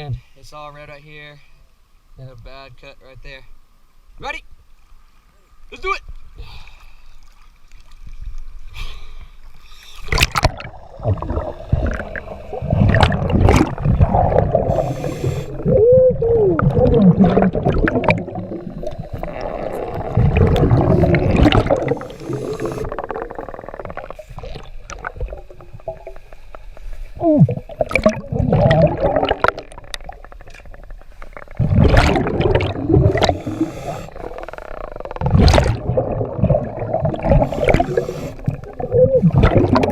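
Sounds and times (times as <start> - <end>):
underwater regulator bubbling: 10.0 - 39.9.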